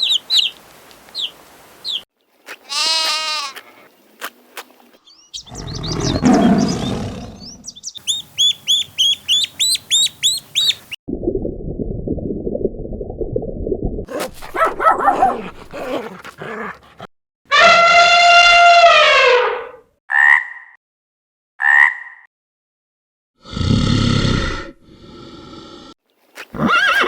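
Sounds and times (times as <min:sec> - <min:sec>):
bleat-like animal call: 0:02.6 - 0:03.8
high animal chirping: 0:05.3 - 0:11.0
fast repeated chirps: 0:07.8 - 0:11.0.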